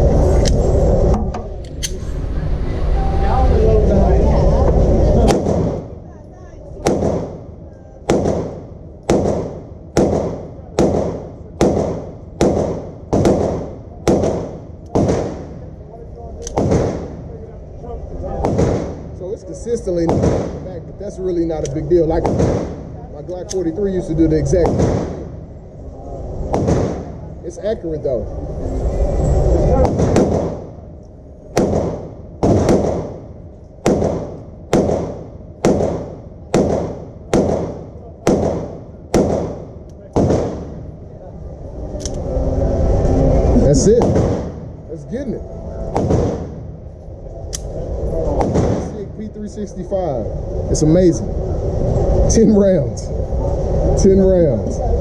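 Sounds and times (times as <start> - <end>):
pistol shots: 5.3 - 5.9, 6.8 - 7.5, 8.1 - 15.7, 16.4 - 17.2, 18.4 - 19.1, 20.0 - 20.7, 22.2 - 22.9, 24.6 - 25.4, 26.5 - 27.2, 29.8 - 30.8, 31.5 - 41.0, 43.8 - 44.6, 45.9 - 46.6, 48.4 - 49.0.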